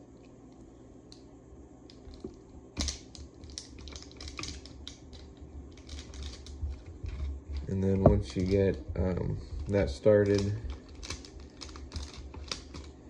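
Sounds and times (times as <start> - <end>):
faint hum: 0.0 - 13.0
plastic parts clicking: 1.9 - 8.8, 9.6 - 12.9.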